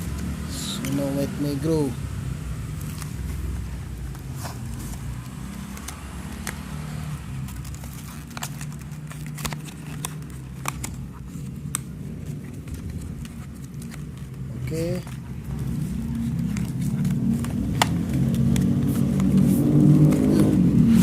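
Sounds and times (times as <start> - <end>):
packaging being handled: 2.6 - 21.0.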